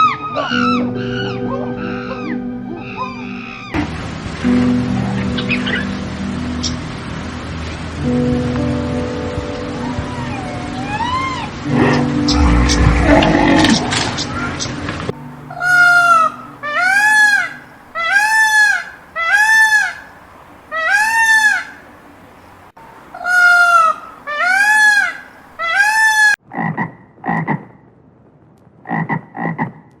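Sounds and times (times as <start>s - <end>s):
loud animal calls: 0.0s - 3.8s, 9.9s - 14.7s.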